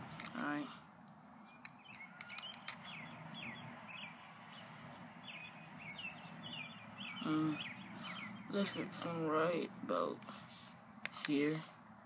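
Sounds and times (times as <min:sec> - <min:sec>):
low steady hum: 0:00.0 - 0:12.0
small birds chirping: 0:00.0 - 0:12.0
sharp clicks: 0:01.0 - 0:02.9.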